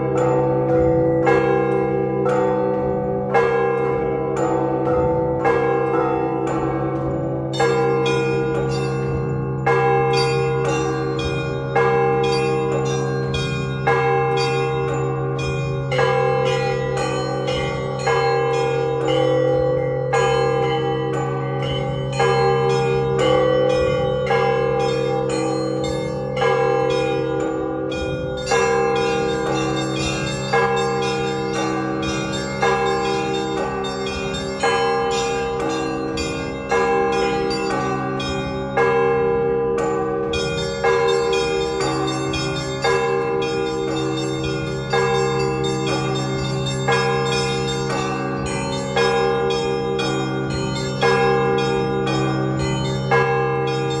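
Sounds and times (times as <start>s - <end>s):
deep bell strikes: 0.0s - 54.0s
small bells ringing quickly: 39.8s - 54.0s.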